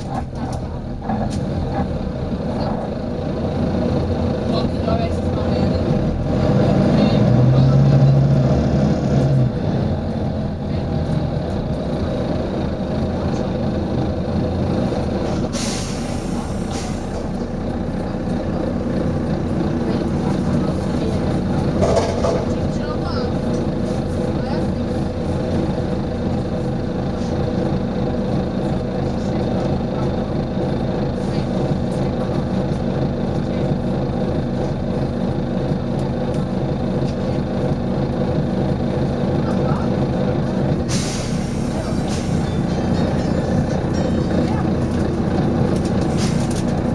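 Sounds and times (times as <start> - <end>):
diesel bus engine running: 0.0 - 46.9
air brake hiss: 15.3 - 17.2, 40.9 - 42.5.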